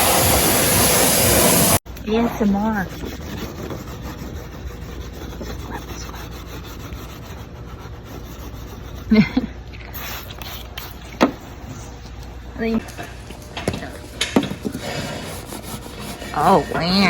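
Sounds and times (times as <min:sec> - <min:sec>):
brush scrubbing a wheel rim: 0:02.4 - 0:11.0, 0:14.7 - 0:17.0.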